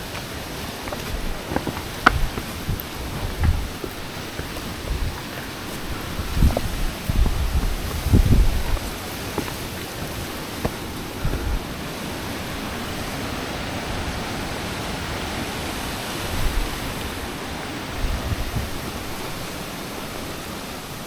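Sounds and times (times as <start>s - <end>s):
strong wind rushing: 0.0s - 11.8s
wind buffeting microphone: 0.0s - 12.8s, 16.1s - 17.2s, 17.9s - 19.7s.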